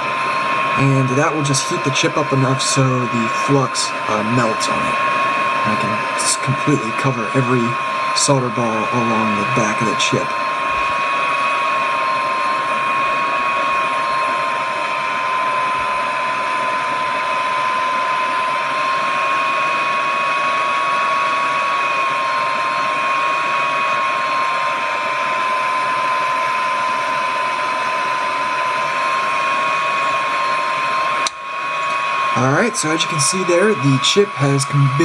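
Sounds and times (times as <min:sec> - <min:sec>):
fan blowing hot air with whine: 0:00.0 - 0:35.0.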